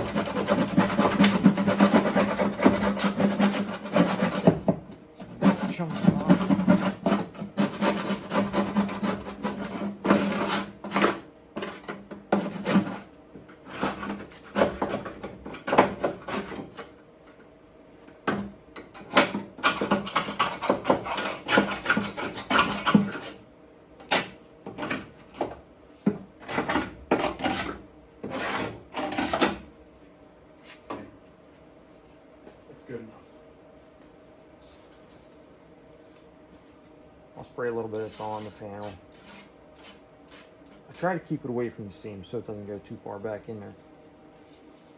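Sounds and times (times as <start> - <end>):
hand scraper scraping sheet metal: 0.0 - 16.9, 19.0 - 23.4, 26.4 - 29.5.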